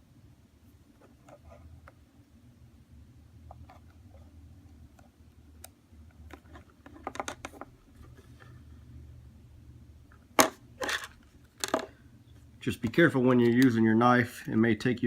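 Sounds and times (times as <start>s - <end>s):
small clicks and taps handling objects: 4.9s - 7.7s, 11.4s - 12.0s.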